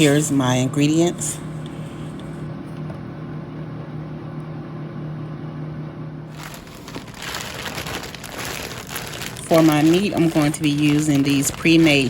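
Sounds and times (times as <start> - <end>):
low machine hum: 0.0 - 12.0
rustling noise: 6.3 - 12.0.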